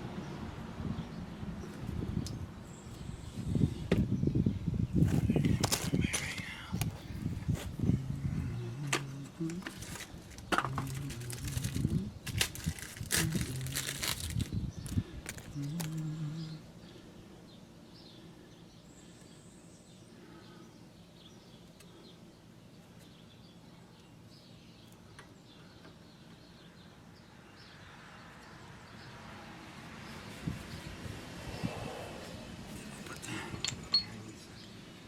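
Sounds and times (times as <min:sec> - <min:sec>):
crinkling and clicking handling noise: 0:05.0 - 0:07.0, 0:08.8 - 0:16.1.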